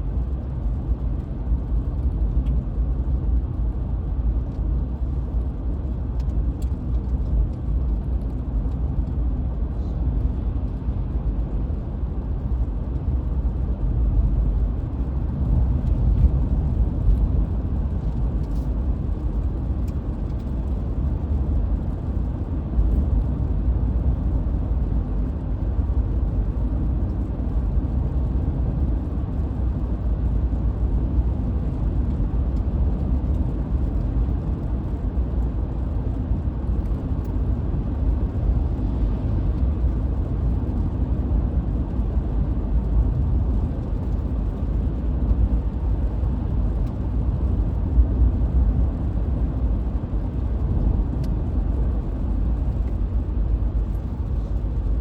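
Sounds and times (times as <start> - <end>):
car tyres and engine rumble: 0.0 - 55.0.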